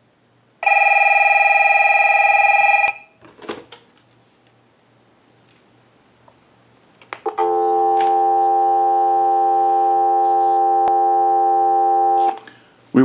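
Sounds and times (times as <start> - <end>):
faint electrical hum: 0.0 - 13.0
telephone dial tone: 0.6 - 3.0, 7.4 - 12.4.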